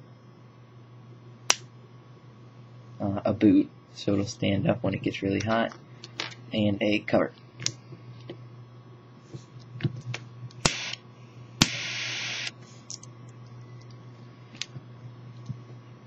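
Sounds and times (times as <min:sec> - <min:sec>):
steady low hum: 0:00.0 - 0:16.0
gas jet hissing: 0:11.6 - 0:12.5.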